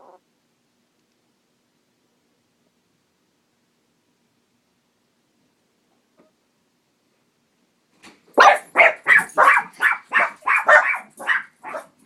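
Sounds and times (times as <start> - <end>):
puppy barking: 8.4 - 12.0.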